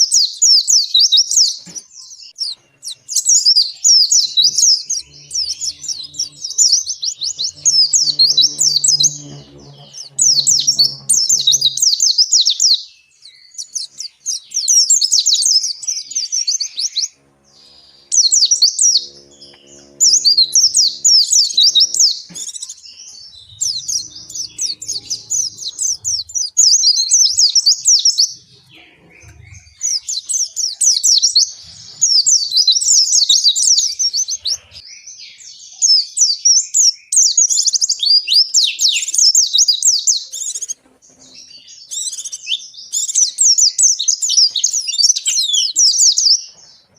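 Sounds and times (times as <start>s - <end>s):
bird twittering song: 0.0s - 46.9s.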